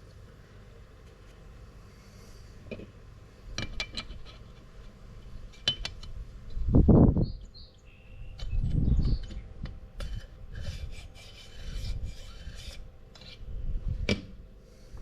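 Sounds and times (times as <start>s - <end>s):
low metal rubbing scrape: 10.0s - 14.0s.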